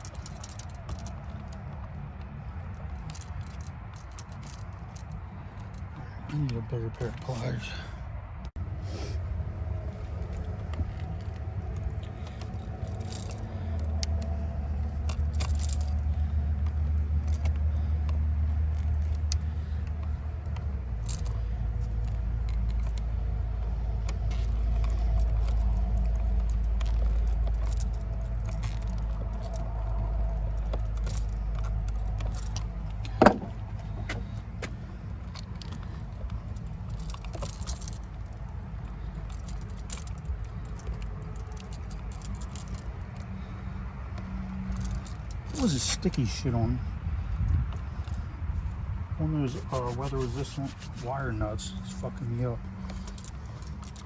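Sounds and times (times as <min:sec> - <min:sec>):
steady low rumble: 0:00.0 - 0:54.0.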